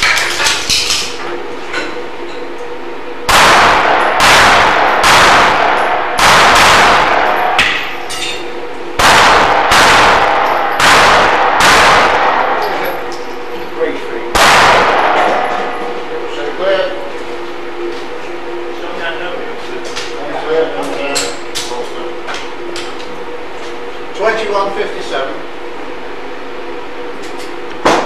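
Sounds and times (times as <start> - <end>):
pistol shots: 3.3 - 13.4, 14.3 - 16.1
ringing echo of shots: 3.3 - 17.8.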